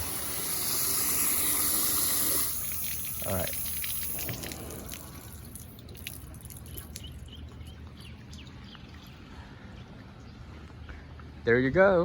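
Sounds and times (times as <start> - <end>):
water dripping: 0.0 - 10.4
small birds chirping: 5.8 - 11.5.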